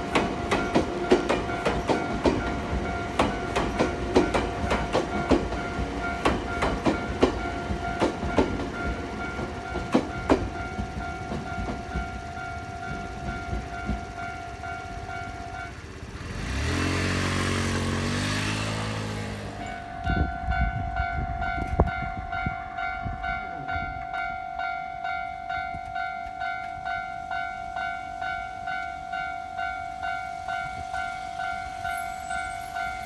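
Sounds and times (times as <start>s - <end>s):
level-crossing warning bell: 0.0s - 16.5s, 18.7s - 33.0s
train wheels clicking on rails: 0.0s - 20.7s
electric train humming past: 0.0s - 33.0s.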